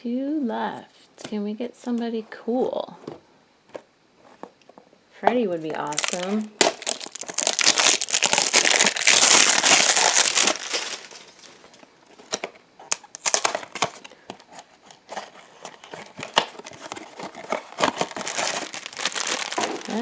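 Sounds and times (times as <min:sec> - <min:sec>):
foil bag crinkling: 0:05.8 - 0:20.0
small crackles and clicks: 0:15.8 - 0:20.0.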